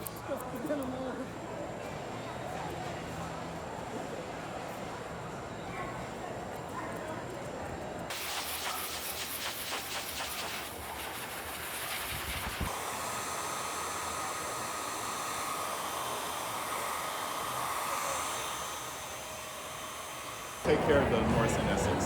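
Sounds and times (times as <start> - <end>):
dog grooming dryer blowing: 8.1 - 21.3.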